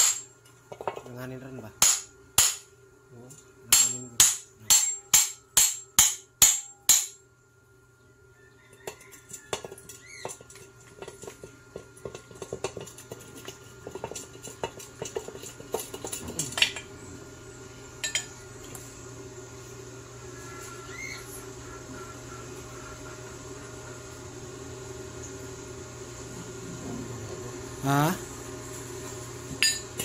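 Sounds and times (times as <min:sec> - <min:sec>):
sharp metal strikes: 0:01.8 - 0:02.7, 0:03.7 - 0:07.2.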